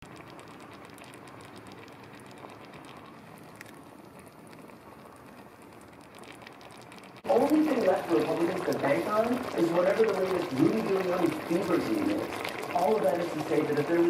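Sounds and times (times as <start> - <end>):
small scattered pops: 0.0 - 7.4
pot bubbling and hissing: 0.0 - 14.0.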